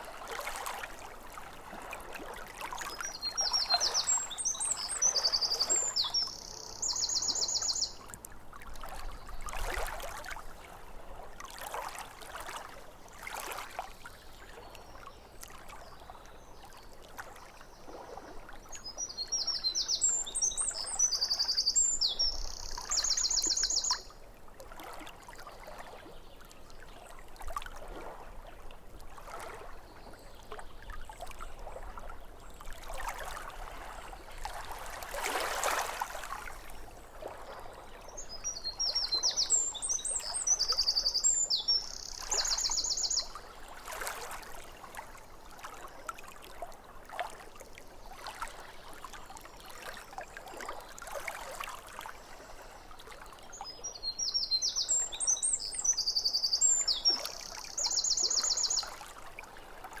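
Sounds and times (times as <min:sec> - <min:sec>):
small waves lapping at shore: 0:00.0 - 1:00.0
songbird singing with trill: 0:03.0 - 0:08.0, 0:18.7 - 0:24.1, 0:38.1 - 0:43.4, 0:53.5 - 0:59.0.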